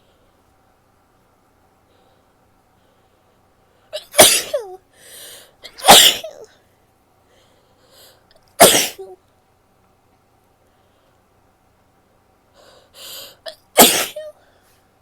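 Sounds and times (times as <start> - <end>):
soft breathing: 1.8 - 4.0, 4.9 - 5.6, 6.6 - 8.4, 10.6 - 11.4, 12.5 - 13.5, 14.3 - 15.0
woman sneezing: 4.0 - 4.8, 5.7 - 6.5, 8.6 - 9.2, 13.8 - 14.4.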